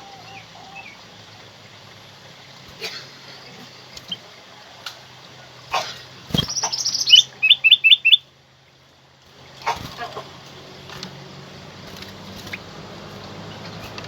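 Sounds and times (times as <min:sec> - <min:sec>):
faint steady hum: 0:00.0 - 0:14.0
bird singing whistled notes: 0:06.4 - 0:08.2.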